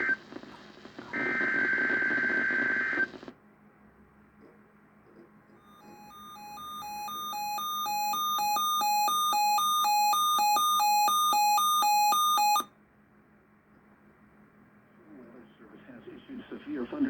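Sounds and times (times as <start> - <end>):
alternating high and low alarm beeps: 5.7 - 12.7.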